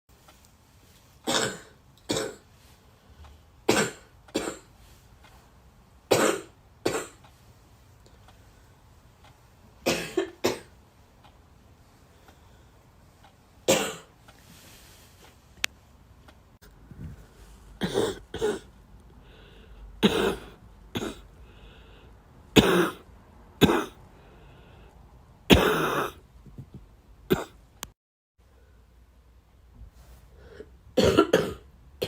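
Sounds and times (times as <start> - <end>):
person coughing: 9.8 - 10.7, 17.8 - 18.7, 20.0 - 21.2, 22.6 - 23.0, 23.6 - 24.0, 25.5 - 26.2, 27.3 - 27.6, 31.0 - 31.7.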